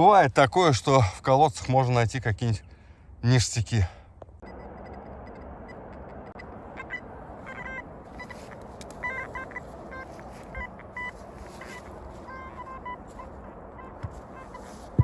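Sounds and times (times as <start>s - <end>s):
metal detector beeps: 4.4s - 15.0s.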